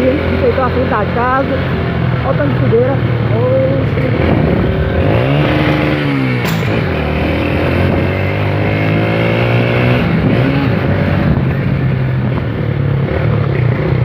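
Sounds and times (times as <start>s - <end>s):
motorcycle engine running: 0.0s - 14.0s
wind rushing over microphone: 1.8s - 12.8s.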